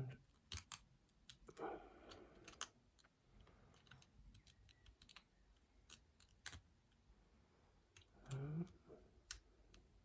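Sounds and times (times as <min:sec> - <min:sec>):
lock pick clicking in padlock: 0:00.3 - 0:01.5.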